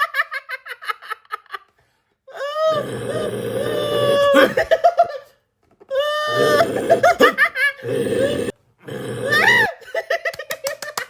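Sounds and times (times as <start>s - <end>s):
person wailing: 2.3s - 4.8s, 5.9s - 8.5s, 9.2s - 9.8s
person laughing: 3.9s - 8.3s, 9.4s - 11.0s.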